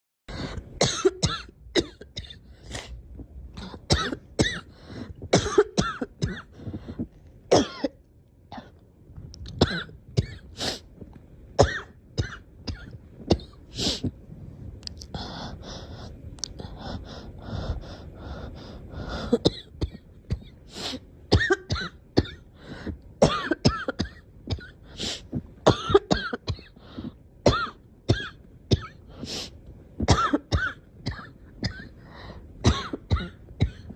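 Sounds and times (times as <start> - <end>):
girl coughing: 3.8 - 4.7, 5.3 - 6.5, 7.5 - 8.0, 21.3 - 22.4, 23.2 - 24.8, 25.7 - 26.8, 30.1 - 31.9, 32.6 - 33.9.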